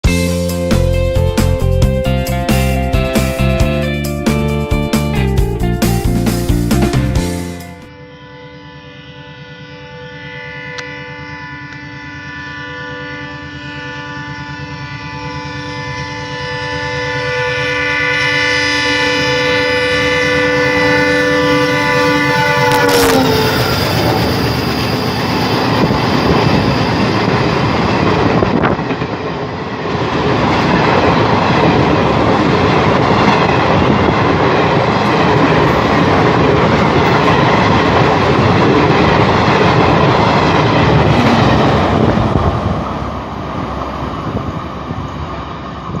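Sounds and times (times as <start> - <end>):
locomotive air horn blast: 7.9 - 25.1, 41.0 - 42.4.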